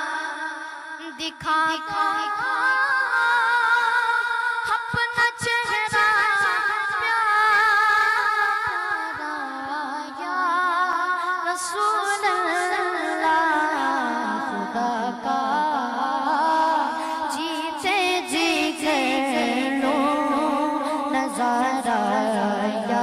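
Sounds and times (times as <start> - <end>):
solo voice singing: 9.6 - 23.0.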